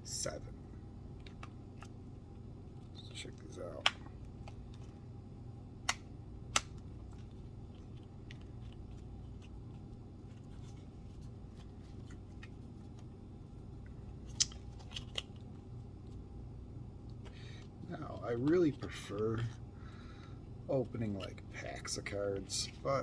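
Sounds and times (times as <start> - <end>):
steady low hum: 0.0 - 23.0.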